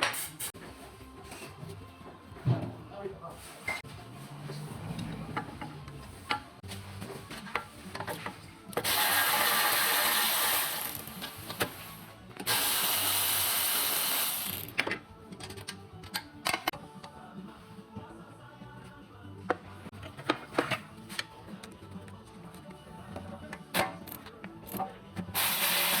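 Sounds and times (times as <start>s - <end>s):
power tool hissing rush: 8.8s - 11.8s, 12.5s - 14.7s, 25.4s - 26.0s.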